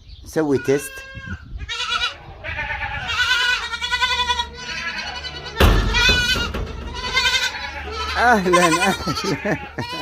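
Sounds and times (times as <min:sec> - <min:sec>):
goats bleating: 0:00.5 - 0:10.0
loud thump: 0:05.6 - 0:07.0.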